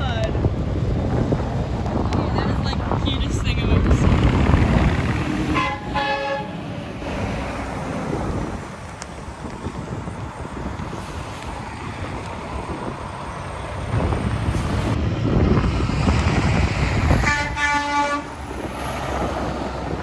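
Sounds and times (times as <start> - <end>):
road traffic: 0.0 - 20.0
heavy truck passing: 0.3 - 20.0
truck horn: 5.4 - 6.7, 17.2 - 18.4.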